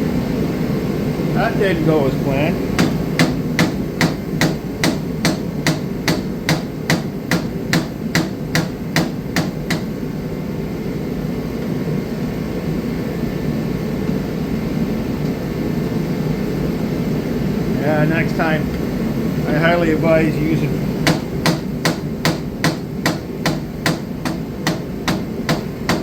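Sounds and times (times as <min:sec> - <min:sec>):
steady low hum: 0:00.0 - 0:26.0
evenly spaced sharp knocks: 0:02.8 - 0:09.9, 0:21.0 - 0:26.0.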